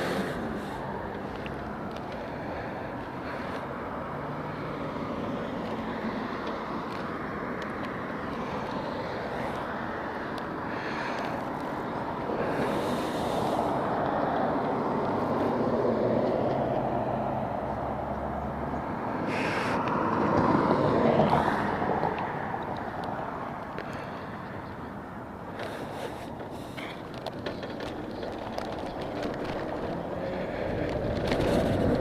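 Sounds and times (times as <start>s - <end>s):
motorbike tyre noise: 0.0s - 16.8s, 25.5s - 32.0s
passing traffic: 0.0s - 32.0s
wind rush on microphone: 27.9s - 32.0s.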